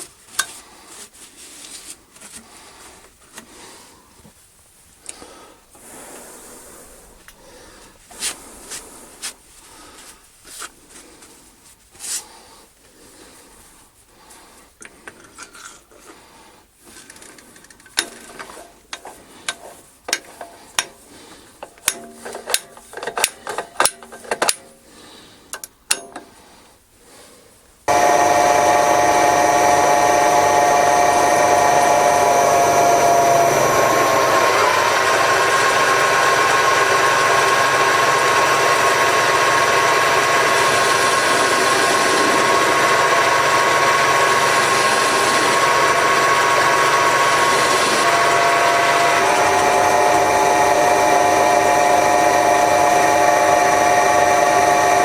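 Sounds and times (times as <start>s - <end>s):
machine tool whining: 27.9s - 55.0s.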